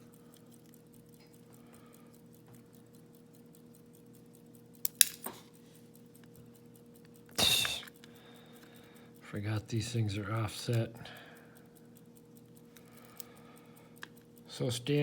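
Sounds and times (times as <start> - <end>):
faint steady hum: 0.0 - 15.0
sharp clicks of lock parts: 4.6 - 8.8, 12.4 - 13.4
metallic clink: 4.8 - 5.5, 7.3 - 7.9.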